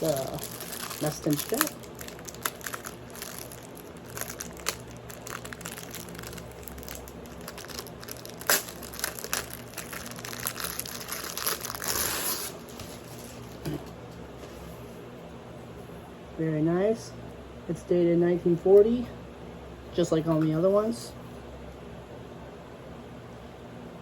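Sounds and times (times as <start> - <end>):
packaging crinkling: 0.0 - 13.7.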